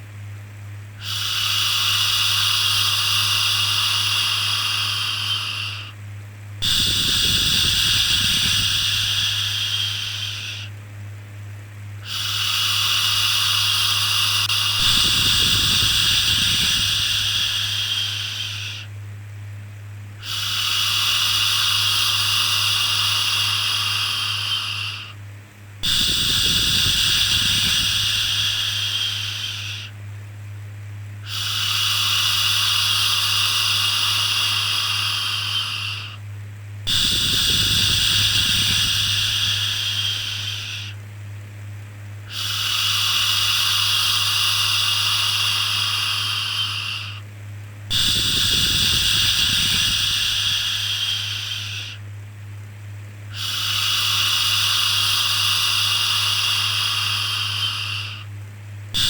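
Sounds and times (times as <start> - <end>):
steady low hum: 0.0 - 59.0
puff of breath: 6.6 - 10.7, 12.0 - 18.9, 25.8 - 30.0, 36.9 - 41.0, 47.9 - 52.0.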